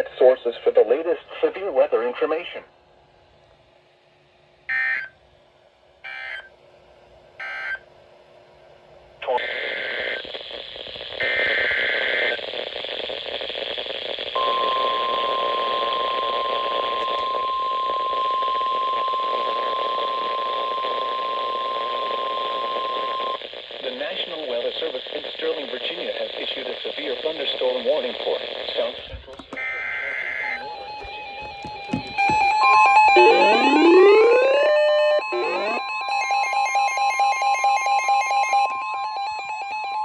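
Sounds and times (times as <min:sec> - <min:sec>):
radio hiss: 0:00.0 - 0:02.7, 0:09.2 - 0:31.8, 0:32.5 - 0:35.8
steady warning alarm tone: 0:06.0 - 0:06.5, 0:07.4 - 0:07.8, 0:29.5 - 0:40.0.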